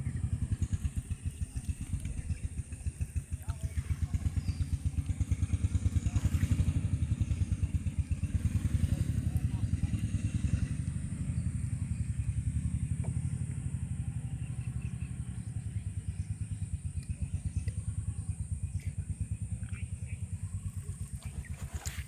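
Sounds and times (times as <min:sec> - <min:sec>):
small engine puttering: 0:00.0 - 0:22.0.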